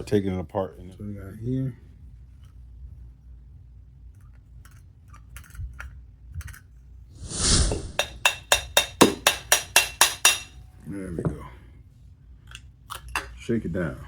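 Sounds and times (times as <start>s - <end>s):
short hiss: 7.2s - 8.0s.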